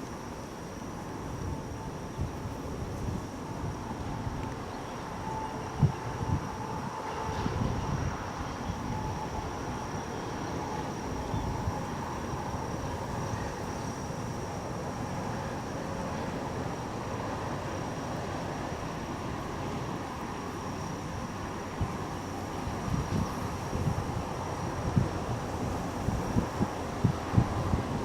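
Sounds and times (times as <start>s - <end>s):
wind buffeting microphone: 0.9s - 28.0s.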